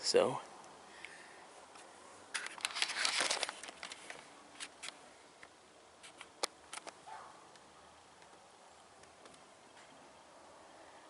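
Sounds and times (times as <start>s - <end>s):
rustling and crinkling: 1.6s - 7.6s.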